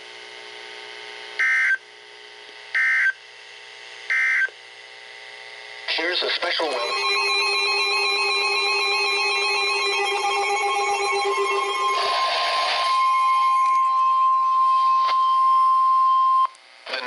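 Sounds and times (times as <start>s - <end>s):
steady single-pitch alert tone: 6.7s - 16.5s
warbling electronic alarm: 6.7s - 16.5s.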